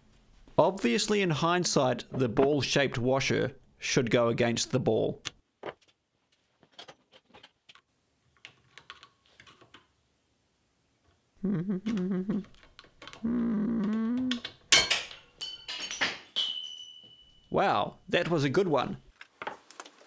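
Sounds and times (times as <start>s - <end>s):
man humming wordless notes: 11.4s - 12.6s, 13.2s - 14.5s.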